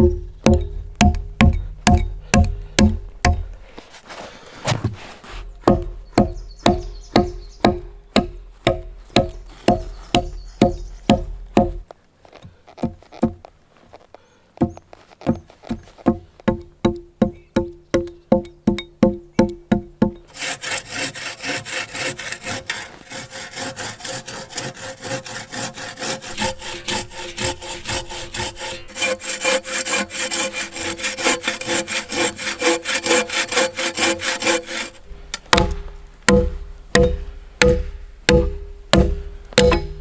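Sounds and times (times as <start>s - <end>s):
hand saw cutting log: 1.9s - 11.8s, 20.3s - 40.0s.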